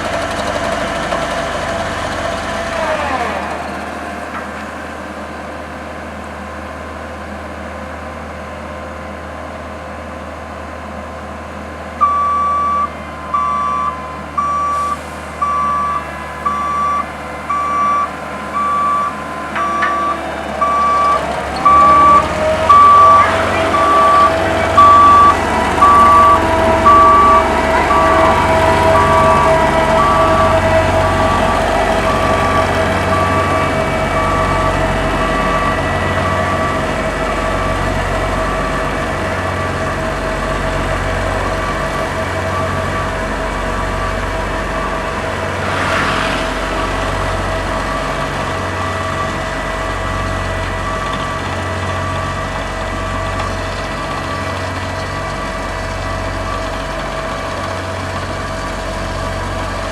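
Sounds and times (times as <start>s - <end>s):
diesel engine pulsing: 0.0s - 59.9s
reversing alarm beeping: 12.0s - 59.9s
brief hiss: 45.6s - 47.3s.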